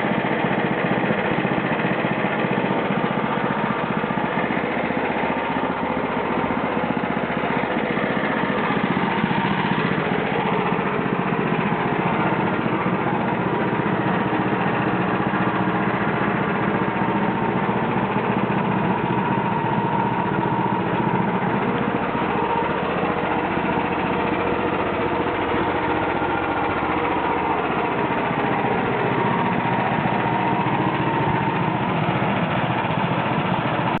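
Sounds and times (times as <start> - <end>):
band sawmill engine running: 0.0 - 34.0.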